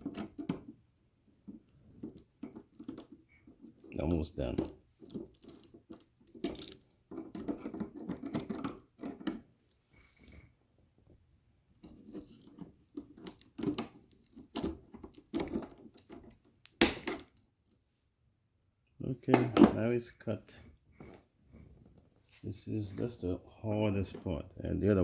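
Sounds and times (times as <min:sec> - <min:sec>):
small metallic clinks: 0:02.0 - 0:09.8.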